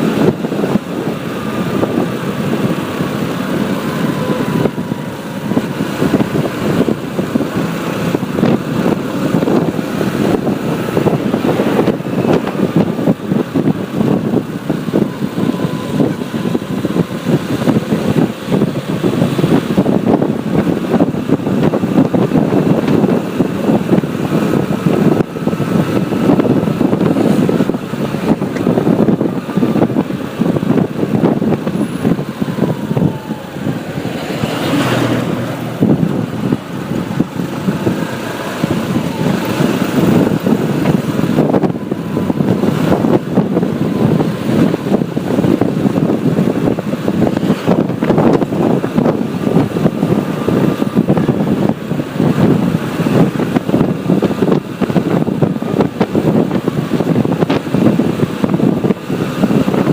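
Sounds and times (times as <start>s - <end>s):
motorbike road noise: 0.0s - 59.9s.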